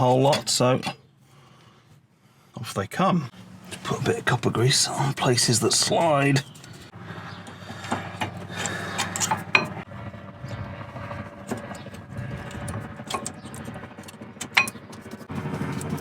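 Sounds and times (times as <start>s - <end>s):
steady low rumble: 3.3s - 16.0s.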